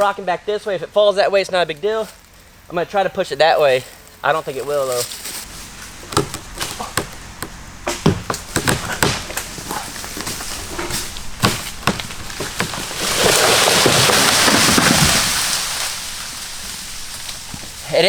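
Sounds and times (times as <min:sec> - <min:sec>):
tree cracking and snapping: 0:03.8 - 0:18.0
tree crashing down: 0:04.1 - 0:18.0.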